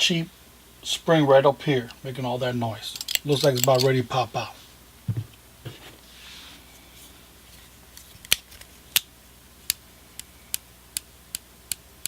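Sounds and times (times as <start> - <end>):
pliers clicking open and shut: 3.0 - 3.9.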